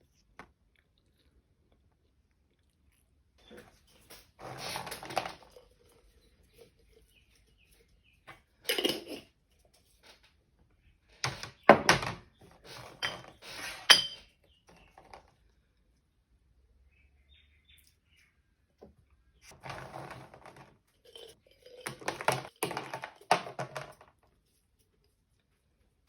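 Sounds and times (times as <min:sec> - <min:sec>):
kitchenware clattering and scraping: 0:03.4 - 0:10.2, 0:11.2 - 0:15.2, 0:19.5 - 0:24.1.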